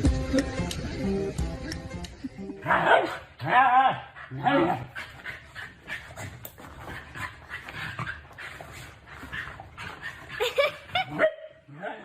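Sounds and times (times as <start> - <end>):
dog vocalising: 2.6 - 11.4.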